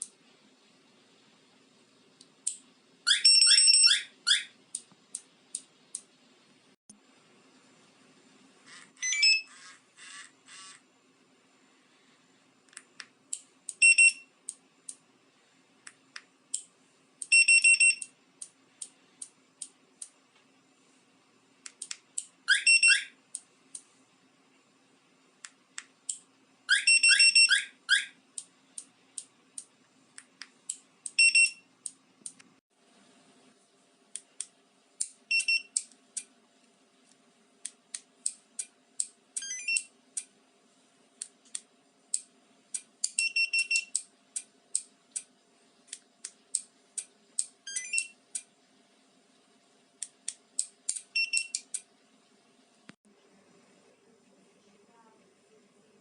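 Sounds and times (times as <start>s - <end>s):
short electronic beeps: 51.2s - 51.6s.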